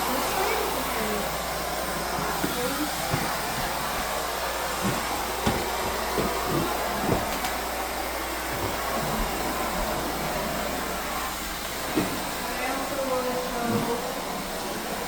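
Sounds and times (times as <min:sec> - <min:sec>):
vacuum cleaner air rushing: 0:00.0 - 0:15.0
vacuum head knocking on floor: 0:04.8 - 0:07.6.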